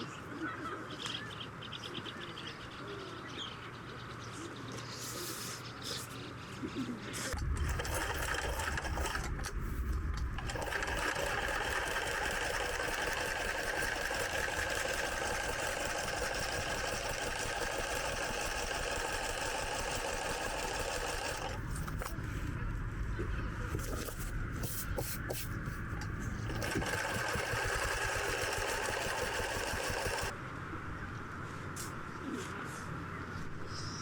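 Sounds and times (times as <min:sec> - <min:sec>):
electric sewing machine stitching: 0:07.3 - 0:09.5, 0:10.3 - 0:22.1, 0:26.4 - 0:30.3.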